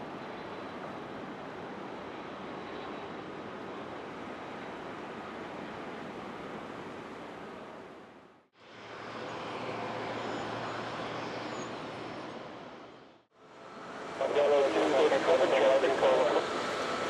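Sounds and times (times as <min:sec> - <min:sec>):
jet engines roaring: 0:13.5 - 0:17.0.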